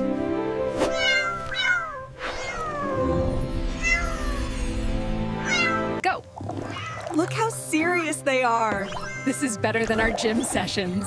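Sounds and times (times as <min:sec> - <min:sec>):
background music with held chords: 0:00.0 - 0:06.2
cat meowing: 0:00.9 - 0:03.0, 0:03.8 - 0:04.4, 0:05.4 - 0:06.0, 0:06.7 - 0:07.1, 0:08.8 - 0:09.5.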